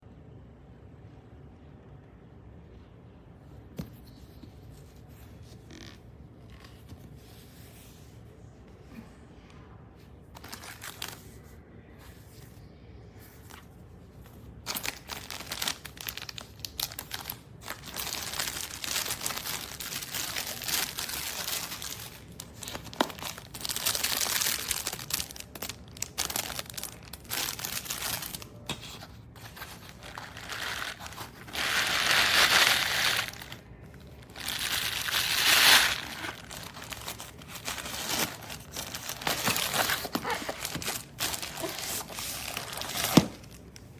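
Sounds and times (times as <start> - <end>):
plastic packaging crinkling: 14.6 - 43.9.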